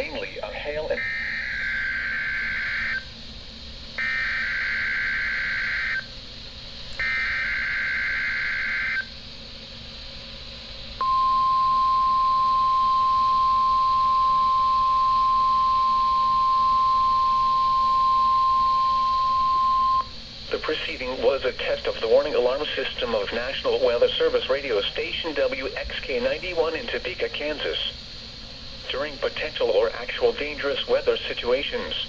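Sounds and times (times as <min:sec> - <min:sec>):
steady warning alarm tone: 0:00.0 - 0:03.3, 0:04.0 - 0:06.1, 0:07.0 - 0:09.2, 0:11.0 - 0:28.0
buzzy two-tone data warble: 0:07.0 - 0:09.1.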